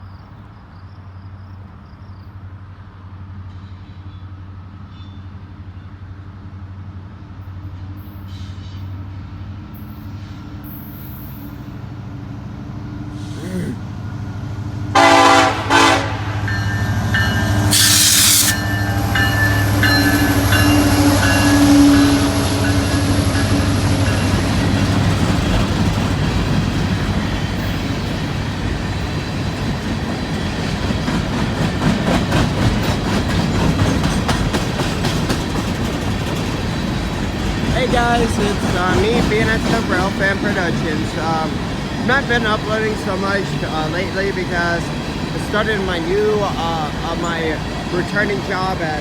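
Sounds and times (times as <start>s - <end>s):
train passing rush: 1.6s - 49.0s
diesel locomotive rumble: 2.4s - 49.0s
train air horn blasts: 14.9s - 16.5s, 17.4s - 23.7s.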